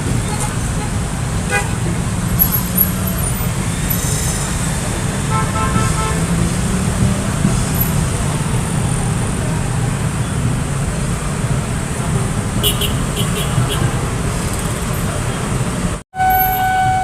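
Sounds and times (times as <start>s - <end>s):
low rumble of vehicles: 0.0s - 17.0s
pulsing horn toot: 5.2s - 6.4s, 16.2s - 17.0s.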